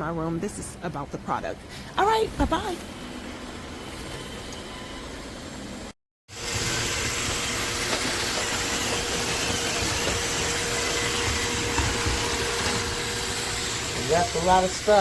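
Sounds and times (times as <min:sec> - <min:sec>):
robot vacuum whirring: 0:06.4 - 0:15.0.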